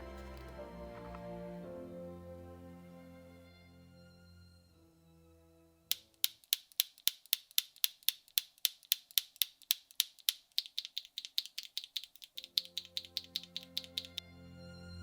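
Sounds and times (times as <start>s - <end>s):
music: 0.0s - 6.0s, 12.4s - 15.0s
mechanical keyboard clacks: 5.9s - 14.2s.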